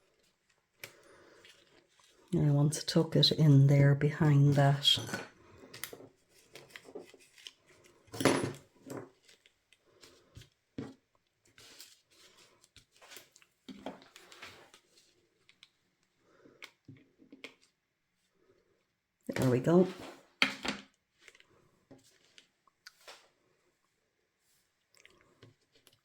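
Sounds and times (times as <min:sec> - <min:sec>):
lace and card rustling: 0:04.4 - 0:08.2.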